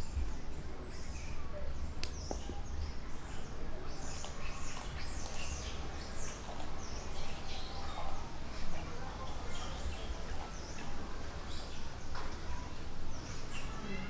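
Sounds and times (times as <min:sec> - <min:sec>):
animal chirps and squeaks: 0:00.9 - 0:08.2.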